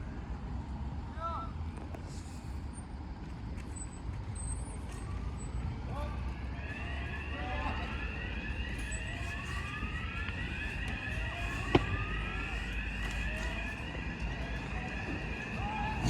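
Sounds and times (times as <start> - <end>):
engines rumbling: 0.0 - 16.0
fire engine sirens: 4.4 - 16.0.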